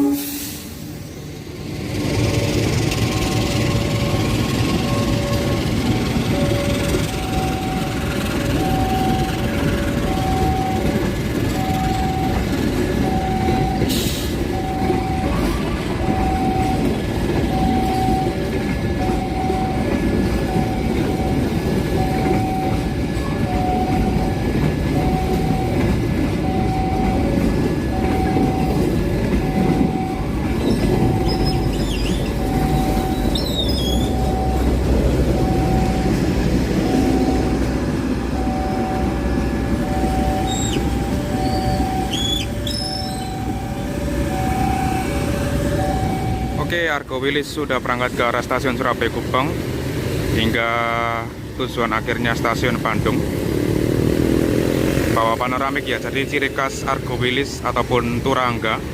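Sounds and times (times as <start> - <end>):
train wheels rumbling on rails: 0.0 - 58.9
electronic warning beep: 2.9 - 47.3
high wheel squeals: 29.4 - 34.8, 39.9 - 46.6.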